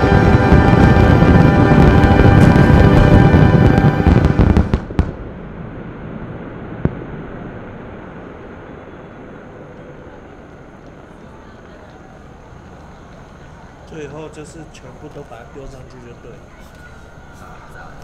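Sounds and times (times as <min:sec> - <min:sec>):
low rumble: 0:00.0 - 0:13.8
fireworks bangs: 0:00.0 - 0:18.0.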